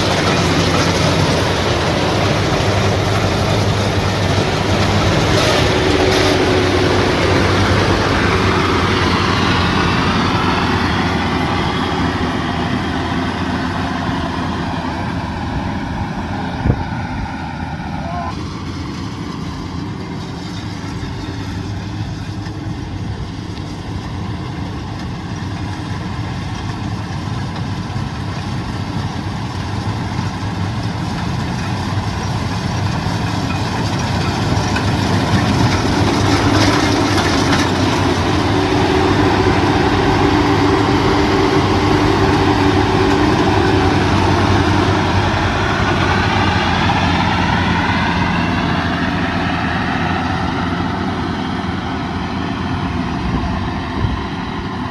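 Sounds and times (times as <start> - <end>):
combine harvester engine running: 0.0 - 54.9.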